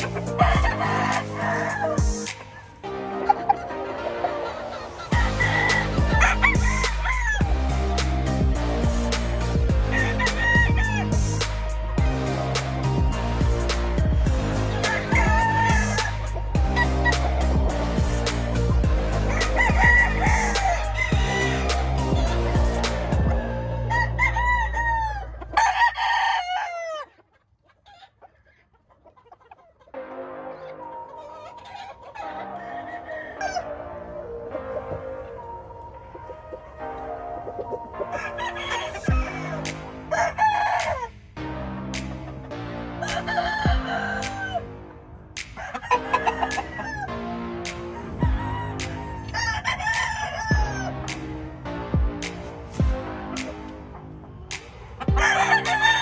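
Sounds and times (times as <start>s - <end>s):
music with steady beat: 0.0s - 2.8s, 5.1s - 23.5s, 39.1s - 40.1s, 40.8s - 44.6s, 45.6s - 49.1s, 49.9s - 56.0s
roosters crowing: 0.0s - 2.8s, 5.1s - 27.1s, 43.0s - 44.7s, 45.6s - 47.2s, 48.2s - 51.0s, 55.0s - 56.0s.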